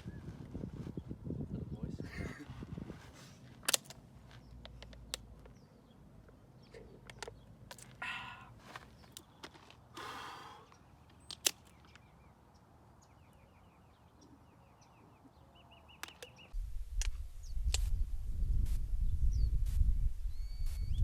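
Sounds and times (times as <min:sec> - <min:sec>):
wind rumbling on microphone: 0:00.0 - 0:03.6, 0:16.5 - 0:21.0.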